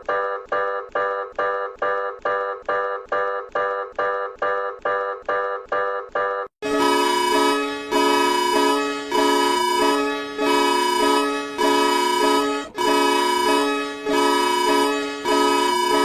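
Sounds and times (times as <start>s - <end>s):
electronic alarm tones: 6.6s - 16.0s.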